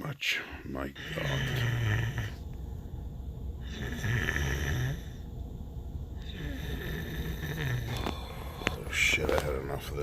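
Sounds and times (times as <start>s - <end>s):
woman snoring: 1.0s - 2.4s, 3.6s - 5.2s, 6.2s - 8.7s.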